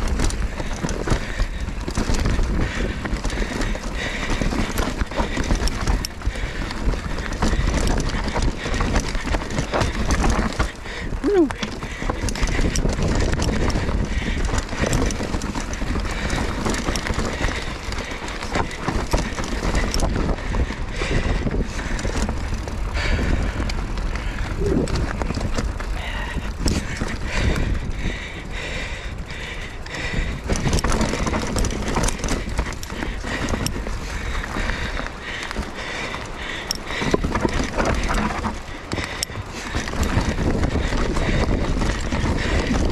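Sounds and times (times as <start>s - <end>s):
bike clattering over rocks: 0.0s - 27.7s, 29.8s - 42.9s
tyre and wind rumble: 0.0s - 42.9s.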